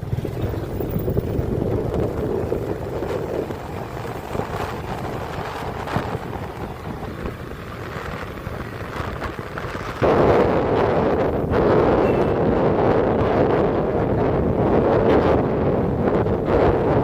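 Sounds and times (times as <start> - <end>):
motorcycle engine: 0.0 - 17.0
road noise: 0.0 - 17.0
wind buffeting microphone: 0.0 - 17.0.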